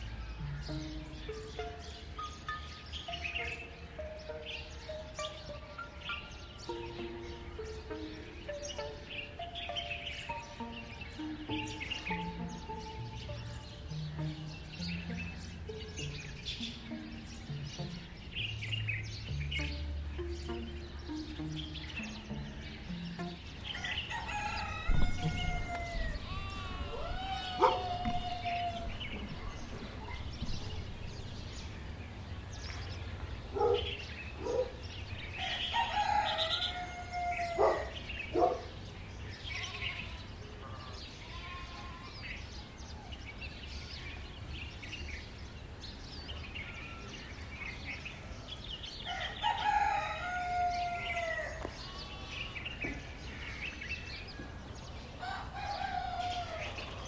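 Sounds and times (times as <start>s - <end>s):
small bird chirps: 0.0s - 49.2s
rooster crowing: 23.7s - 31.3s, 35.3s - 38.6s, 49.0s - 52.6s, 55.2s - 57.0s
sharp knocks: 24.8s - 26.5s.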